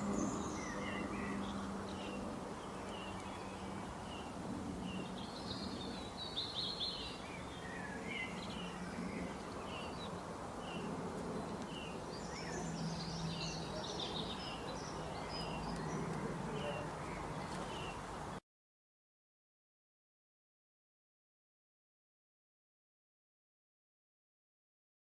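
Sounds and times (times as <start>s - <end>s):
birds chirping: 0.0s - 18.4s.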